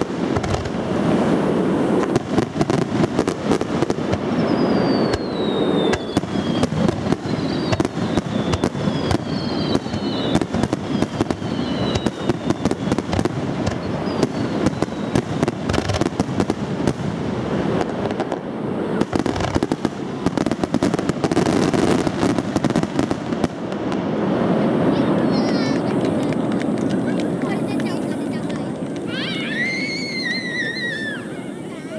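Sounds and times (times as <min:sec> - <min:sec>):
fireworks bangs and crackling: 0:00.0 - 0:31.9
firework whistles falling in pitch: 0:00.4 - 0:16.5, 0:27.4 - 0:31.9.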